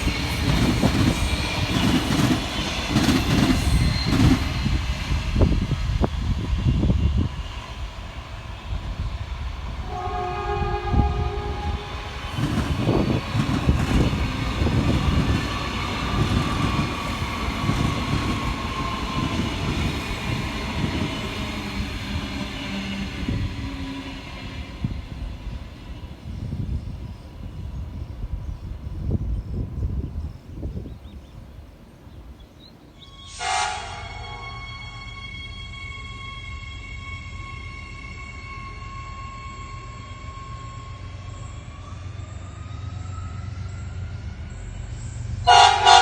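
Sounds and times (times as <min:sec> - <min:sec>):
train wheels rumbling on track: 0:00.0 - 0:46.0
train horn blast: 0:09.8 - 0:12.3, 0:33.0 - 0:41.3, 0:45.4 - 0:46.0.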